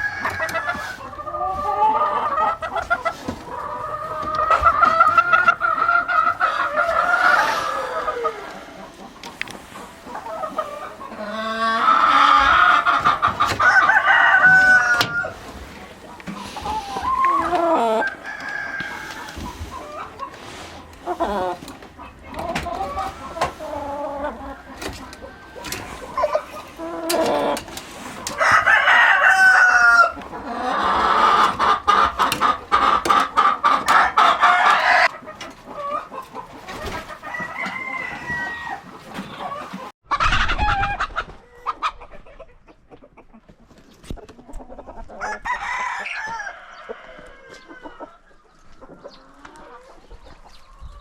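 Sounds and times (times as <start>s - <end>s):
chickens clucking: 0.0s - 51.0s
rooster crowing: 13.5s - 15.4s, 17.2s - 19.4s, 28.3s - 30.2s, 37.3s - 38.8s, 45.2s - 48.0s.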